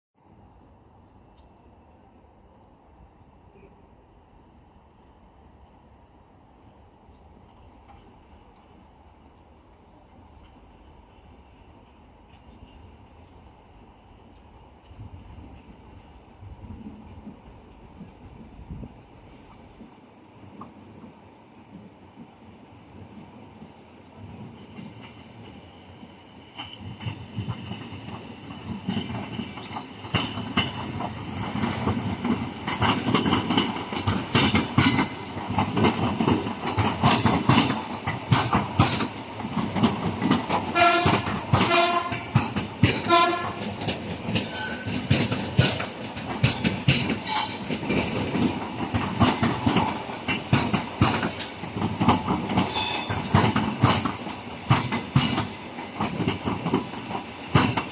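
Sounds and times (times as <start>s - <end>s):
train wheels clacking on rails: 19.7s - 57.9s.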